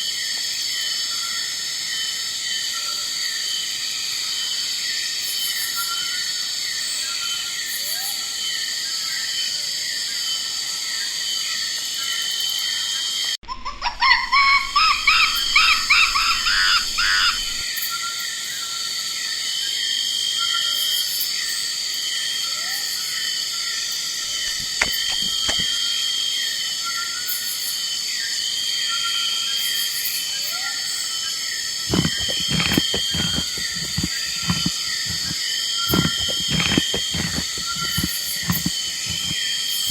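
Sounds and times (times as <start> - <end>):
insect chorus: 0.0 - 13.4.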